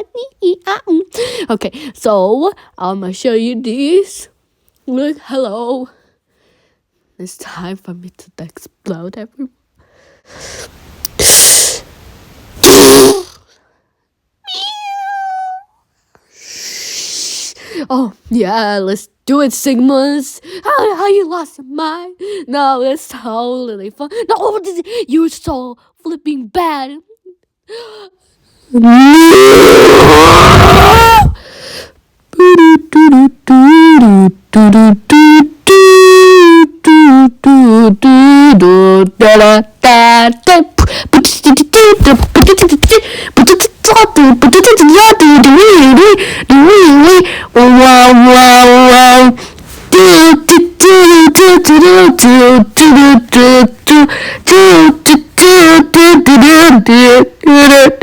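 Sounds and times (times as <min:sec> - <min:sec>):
high-pitched cry: 0:14.4 - 0:15.8, 0:29.0 - 0:31.4, 0:43.9 - 0:47.2, 0:47.8 - 0:49.3
pitched vocal-like notes: 0:41.8 - 0:49.4.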